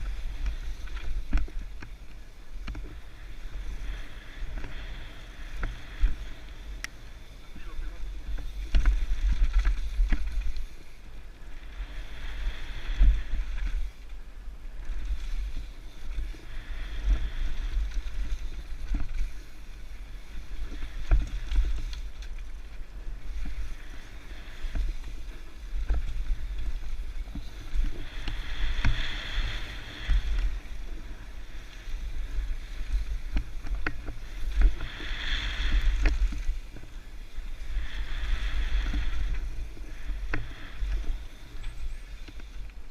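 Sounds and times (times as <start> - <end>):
wind buffeting microphone: 0.0 - 42.9
bike knocks and rattles: 8.6 - 10.5.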